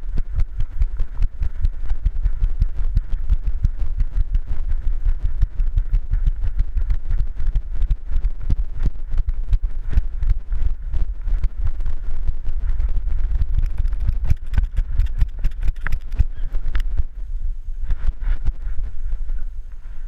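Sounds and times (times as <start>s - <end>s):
wind and handling noise: 0.0s - 20.0s.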